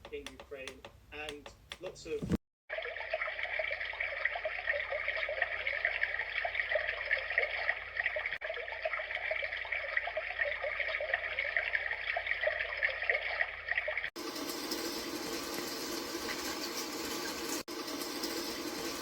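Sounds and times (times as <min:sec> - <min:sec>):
recorded stream through small speaker: 0:00.0 - 0:02.4.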